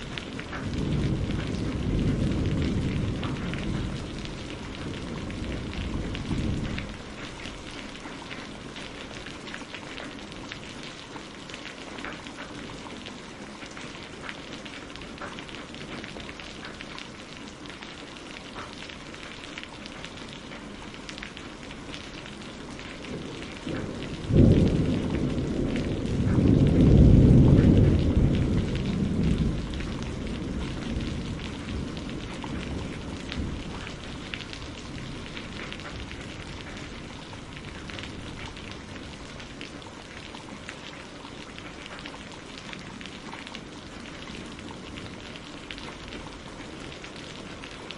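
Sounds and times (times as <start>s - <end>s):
thunder clap: 0.0s - 7.3s, 22.9s - 39.7s
thunder rumbling: 0.0s - 10.6s, 21.3s - 47.9s
rain pattering: 0.0s - 47.9s.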